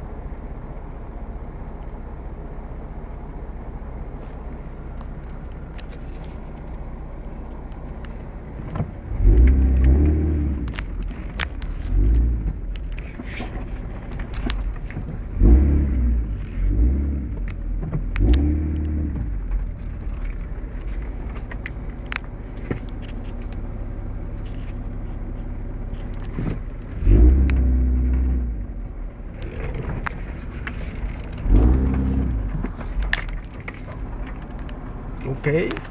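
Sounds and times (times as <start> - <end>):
engine revving: 8.6 - 13.5, 14.3 - 21.3, 26.3 - 34.4.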